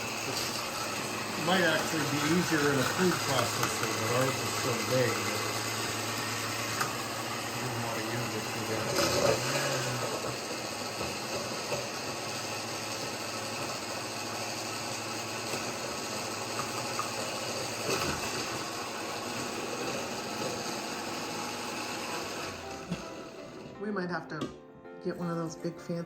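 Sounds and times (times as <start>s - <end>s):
blender motor running: 0.0s - 23.8s.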